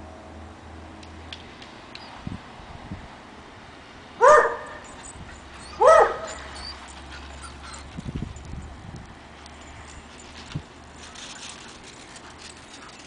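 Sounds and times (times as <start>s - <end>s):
dog barking: 4.2s - 4.8s, 5.8s - 6.5s.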